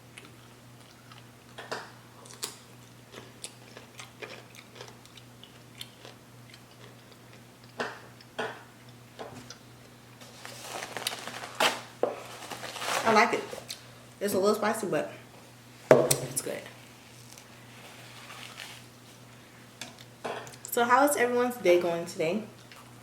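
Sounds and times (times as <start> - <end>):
chewing crisp cucumber: 0.0 - 10.2.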